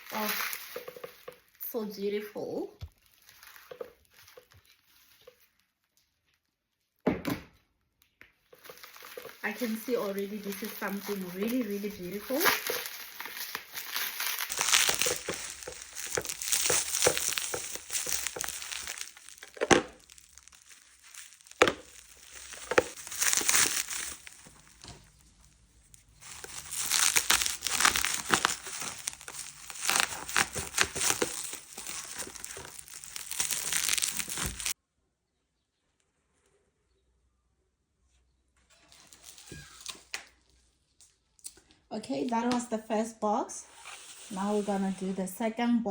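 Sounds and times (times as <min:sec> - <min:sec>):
packaging crinkling and rustling: 0:00.0 - 0:06.5, 0:08.5 - 0:34.8, 0:38.7 - 0:40.6.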